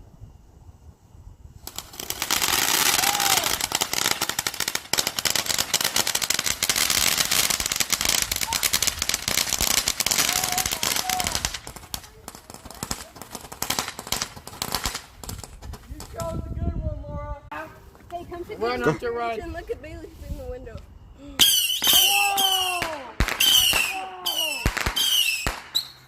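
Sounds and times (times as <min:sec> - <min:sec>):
firecrackers popping: 0:01.6 - 0:16.6, 0:21.4 - 0:26.0.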